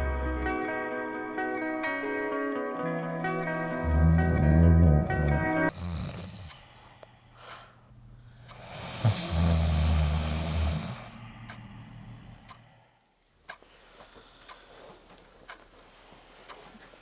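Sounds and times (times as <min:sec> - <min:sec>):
person snoring: 0:03.7 - 0:06.7, 0:08.5 - 0:12.8
clock ticking: 0:08.4 - 0:08.7, 0:11.2 - 0:12.6, 0:13.4 - 0:13.7, 0:14.4 - 0:15.8, 0:16.4 - 0:16.7.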